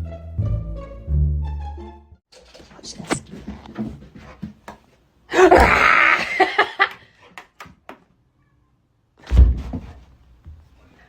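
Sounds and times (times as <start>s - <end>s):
thump: 9.2s - 10.0s.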